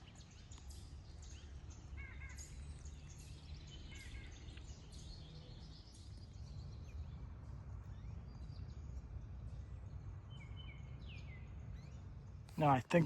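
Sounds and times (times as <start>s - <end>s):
birds chirping: 12.6s - 13.0s.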